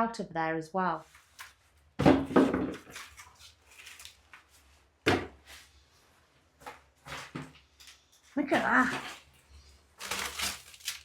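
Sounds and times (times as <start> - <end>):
scraping and rustling: 6.7 - 11.0.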